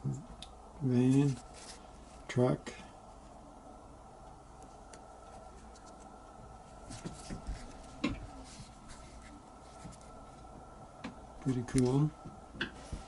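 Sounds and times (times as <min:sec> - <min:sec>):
faint room tone hum: 0:00.0 - 0:13.0
soft handling clicks and scrapes: 0:04.6 - 0:10.5.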